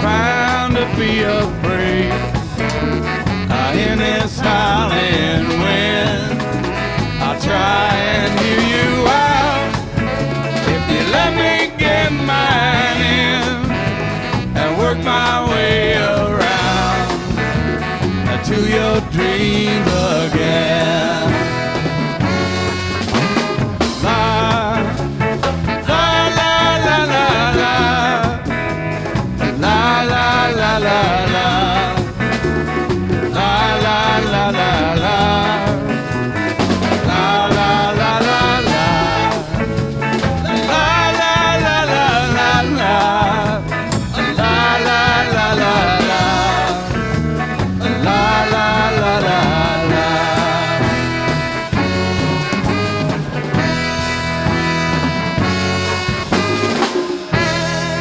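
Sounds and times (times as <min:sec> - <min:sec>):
live band playing upbeat ska: 0:00.0 - 0:58.0.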